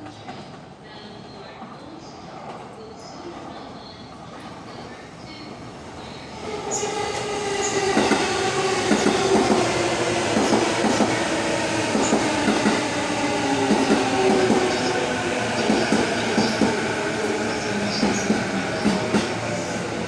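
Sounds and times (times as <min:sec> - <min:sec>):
train wheels knocking on rail joints: 0:10.3 - 0:11.2.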